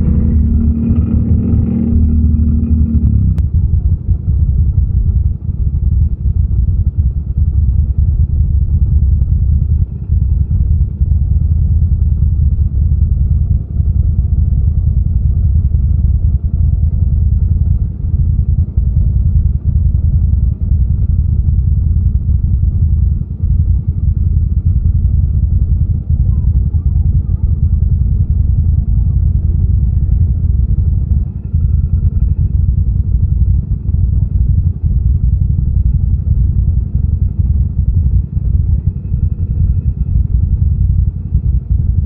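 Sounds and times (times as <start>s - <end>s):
atv engine rumbling: 0.0s - 5.9s, 8.6s - 41.9s.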